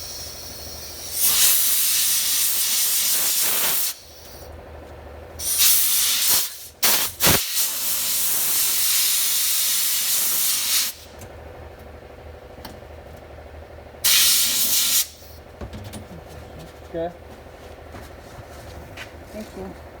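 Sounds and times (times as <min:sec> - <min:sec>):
compressed air hissing: 0:00.0 - 0:04.5, 0:05.4 - 0:11.1, 0:14.0 - 0:15.4
steady low hum: 0:00.0 - 0:08.9, 0:10.0 - 0:20.0.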